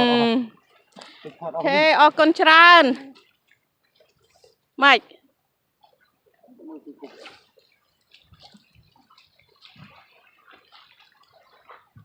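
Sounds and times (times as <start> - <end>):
water splashing and dripping: 0.0 - 5.0, 5.7 - 12.0.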